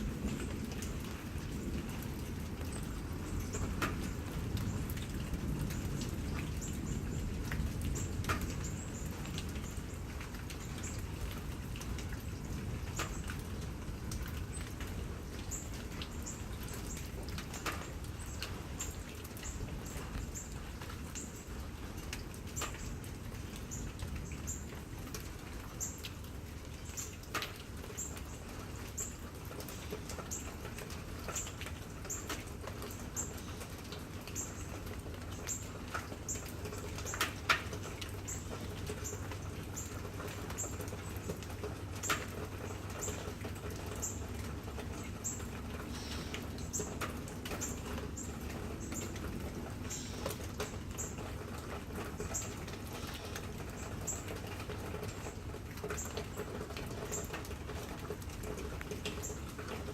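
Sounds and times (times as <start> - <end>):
rain dripping and pattering: 0.0 - 59.9.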